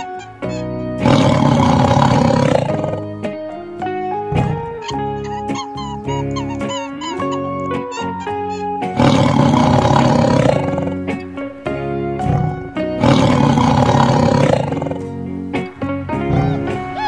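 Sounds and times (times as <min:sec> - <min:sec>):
background music: 0:00.0 - 0:17.0
big cat roaring: 0:00.1 - 0:03.2, 0:04.2 - 0:05.2, 0:07.1 - 0:11.1, 0:12.2 - 0:15.2.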